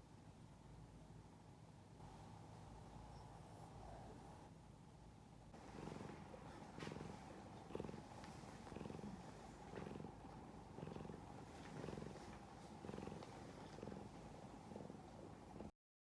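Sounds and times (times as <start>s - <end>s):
dog snoring: 2.2s - 4.4s, 5.6s - 15.7s.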